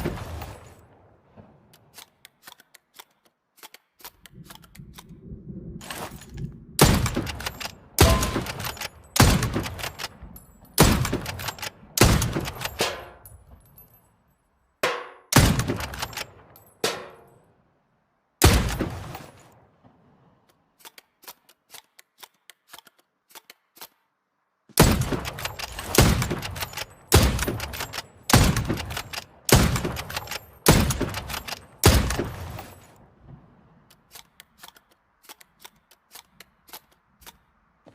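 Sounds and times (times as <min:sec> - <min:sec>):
rifle shots: 0:06.8 - 0:10.2, 0:10.8 - 0:13.2, 0:15.3 - 0:17.1, 0:18.4 - 0:19.4, 0:24.8 - 0:32.8.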